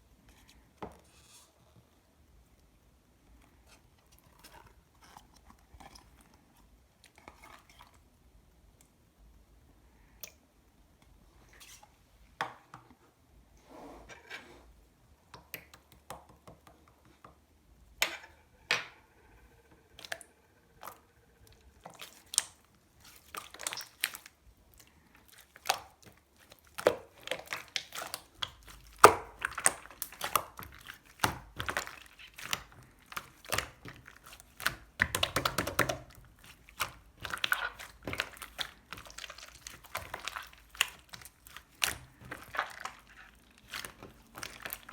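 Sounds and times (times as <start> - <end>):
slime squished by hand: 21.9 - 24.4, 25.2 - 44.9.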